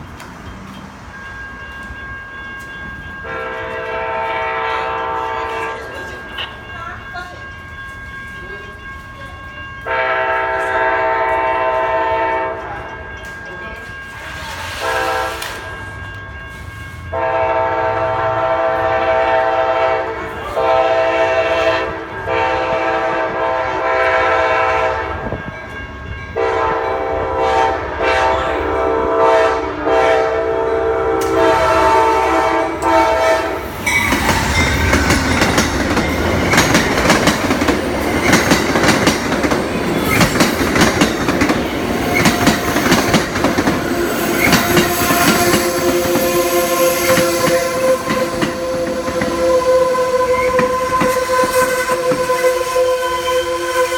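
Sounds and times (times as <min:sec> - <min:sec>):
train rumble passing: 0:00.0 - 0:53.9
locomotive air horn blasts: 0:03.2 - 0:06.0, 0:09.9 - 0:12.7, 0:14.7 - 0:15.8, 0:17.1 - 0:25.3, 0:26.4 - 0:34.9, 0:43.8 - 0:53.9
wheels clattering on rails: 0:32.8 - 0:46.4.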